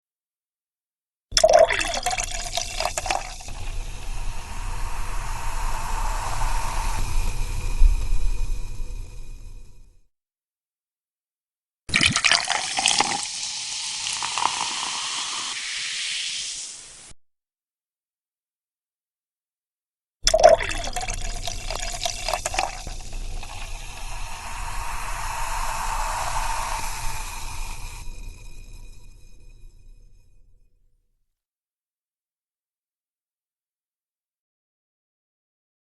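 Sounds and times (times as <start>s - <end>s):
fizzing popping bubbles: 1.4s - 3.6s, 11.9s - 17.0s, 20.3s - 27.8s
soda pouring into a glass: 1.4s - 8.6s, 11.9s - 17.1s, 20.3s - 29.0s.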